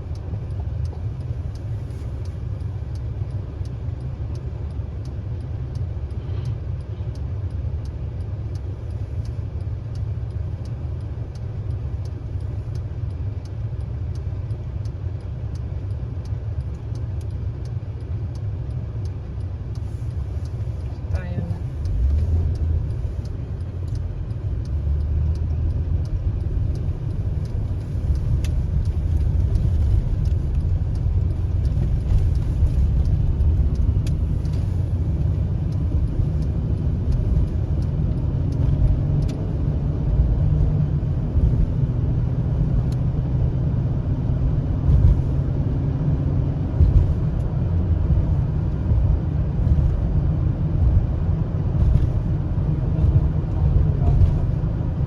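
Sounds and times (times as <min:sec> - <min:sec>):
car road and engine rumble: 0:00.0 - 0:55.0
faint clicks: 0:00.1 - 0:40.0.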